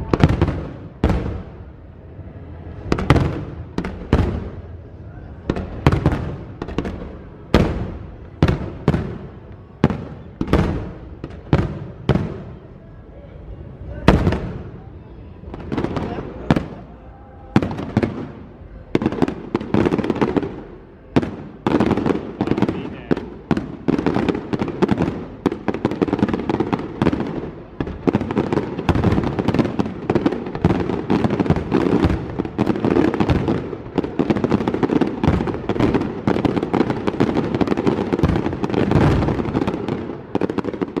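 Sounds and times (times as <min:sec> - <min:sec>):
fireworks bangs and crackles: 0:00.0 - 0:12.8, 0:13.8 - 0:41.0.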